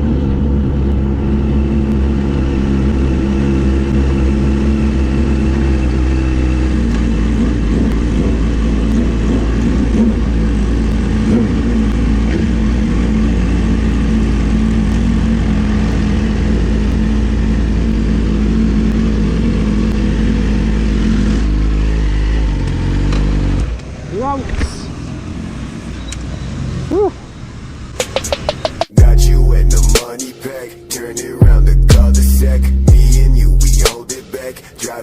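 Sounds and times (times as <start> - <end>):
motorcycle engine running: 0.0 - 24.4, 28.0 - 30.0, 31.4 - 33.9.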